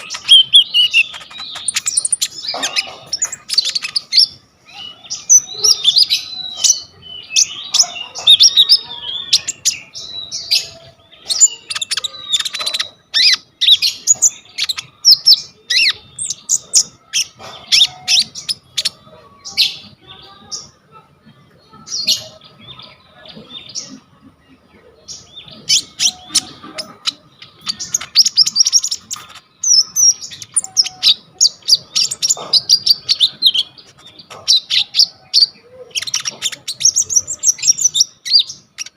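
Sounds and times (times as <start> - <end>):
songbird chirping and trilling: 0.0 - 38.9.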